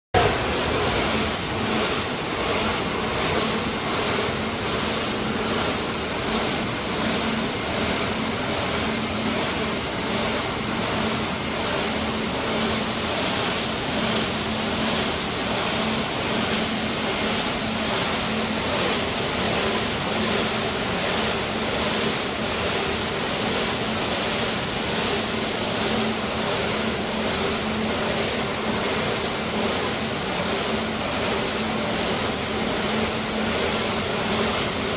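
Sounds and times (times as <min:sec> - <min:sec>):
machine hissing: 0:00.2 - 0:34.9.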